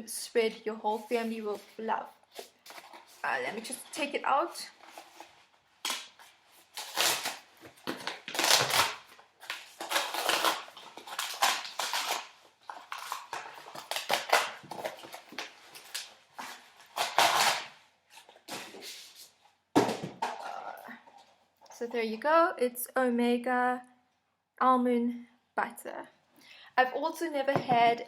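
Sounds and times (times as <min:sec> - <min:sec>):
packaging rustling and crinkling: 0:00.9 - 0:21.5.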